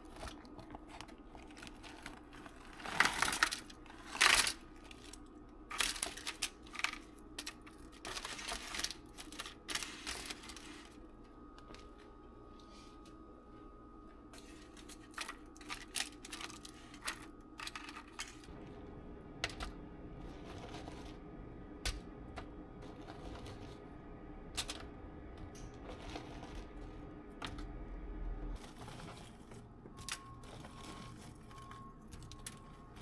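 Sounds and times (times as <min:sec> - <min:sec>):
steady low hum: 0:03.8 - 0:33.0
small objects clicking and tapping: 0:19.4 - 0:21.2, 0:21.8 - 0:23.9, 0:24.6 - 0:28.3, 0:29.9 - 0:33.0.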